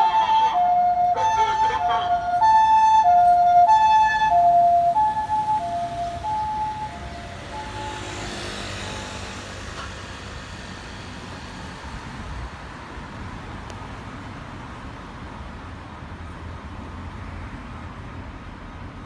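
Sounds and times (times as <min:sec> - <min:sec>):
ambulance two-tone siren: 0:00.0 - 0:09.9
road traffic and tyre noise: 0:00.0 - 0:19.0
vehicle passing close: 0:00.9 - 0:12.8.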